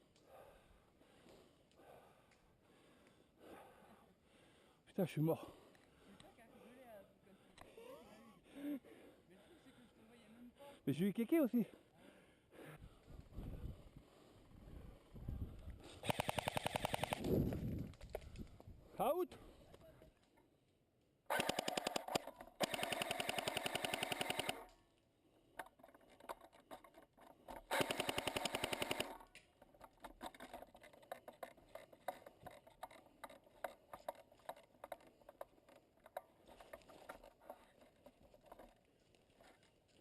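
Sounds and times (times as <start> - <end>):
faint clicks: 1.2 - 3.2
airsoft rifle automatic fire: 16.0 - 17.3, 21.3 - 24.7, 27.7 - 29.2.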